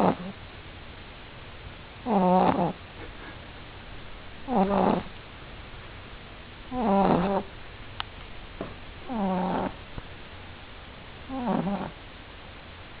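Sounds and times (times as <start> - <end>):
puppy snoring: 0.0 - 0.4, 2.0 - 2.8, 4.4 - 5.1, 6.7 - 7.5, 9.0 - 9.8, 11.3 - 12.0.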